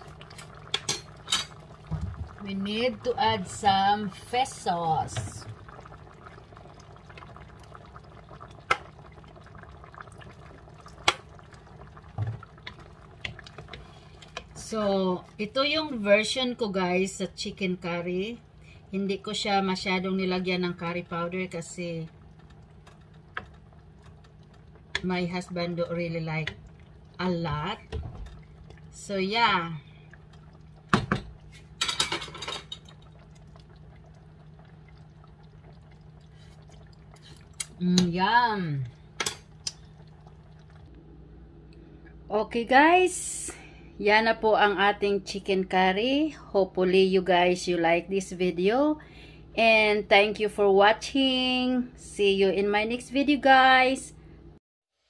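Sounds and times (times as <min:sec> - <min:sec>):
curry bubbling in a pot: 0:00.0 - 0:41.3
sauce splashing: 0:22.1 - 0:38.1, 0:38.9 - 0:41.0.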